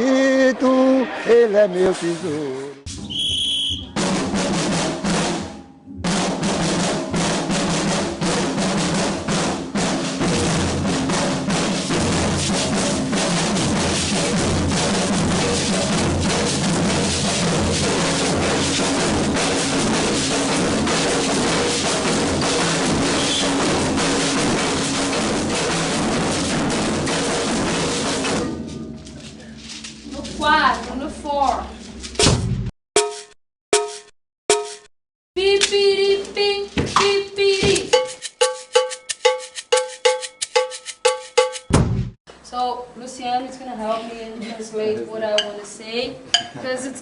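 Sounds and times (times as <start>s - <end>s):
snare drums: 2.9s - 28.6s, 36.9s - 42.2s
bass drums: 2.9s - 28.9s, 30.2s - 32.7s, 41.0s - 42.2s.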